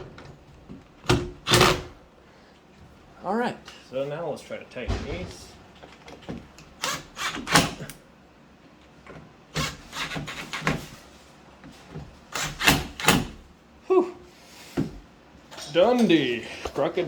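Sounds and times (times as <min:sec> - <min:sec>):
screws driven into wood: 0:01.1 - 0:01.9, 0:06.8 - 0:08.0, 0:09.6 - 0:10.8, 0:12.3 - 0:13.4.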